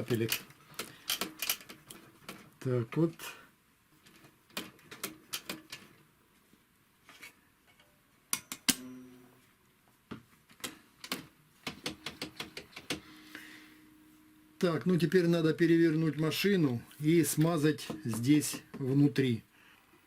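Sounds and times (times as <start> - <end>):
metal parts and tools clicking: 0.0 - 2.5.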